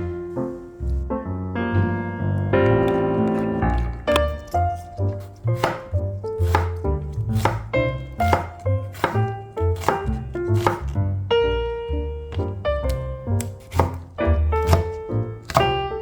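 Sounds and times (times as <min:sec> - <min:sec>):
light piano music: 0:00.0 - 0:16.0
knife chopping on cutting board: 0:03.6 - 0:11.0, 0:12.3 - 0:15.9.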